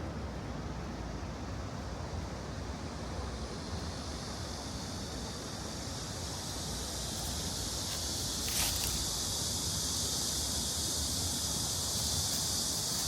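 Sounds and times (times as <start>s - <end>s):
shallow stream rushing: 5.2s - 13.0s.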